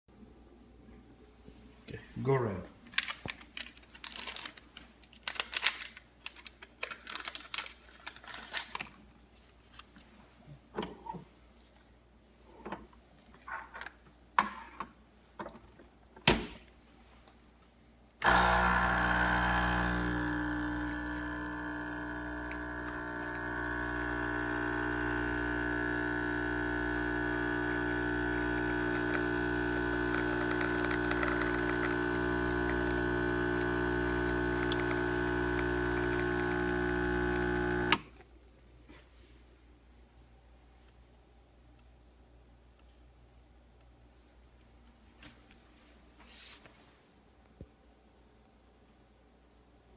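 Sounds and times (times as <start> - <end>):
espresso machine pump humming: 18.2 - 38.0.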